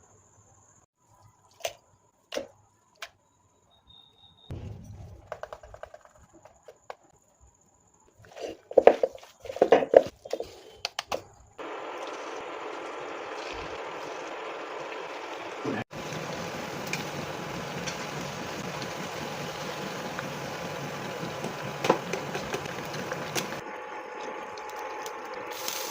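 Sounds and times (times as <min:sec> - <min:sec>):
steady hiss: 0:25.5 - 0:25.9.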